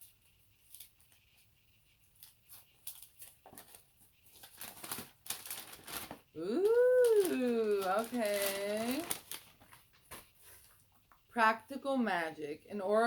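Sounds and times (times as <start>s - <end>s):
paper crinkling and tearing: 2.2s - 10.8s.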